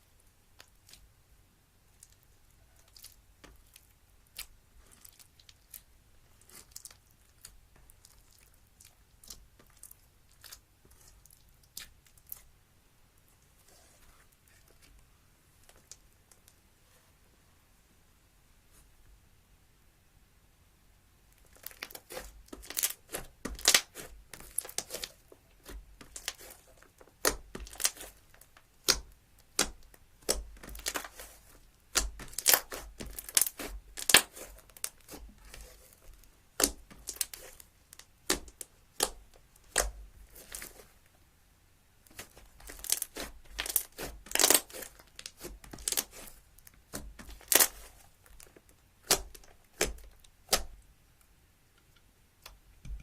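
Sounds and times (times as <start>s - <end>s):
slime popping and crackling: 21.4s - 40.8s, 42.0s - 50.8s.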